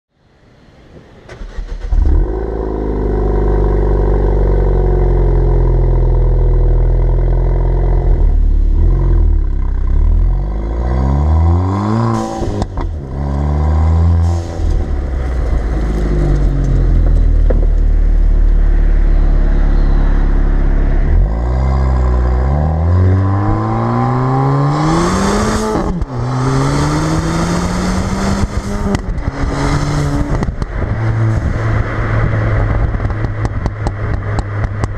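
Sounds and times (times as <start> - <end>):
car engine revving: 1.3 - 34.9
exhaust crackles and pops: 14.3 - 19.5, 25.6 - 26.3, 28.3 - 34.9.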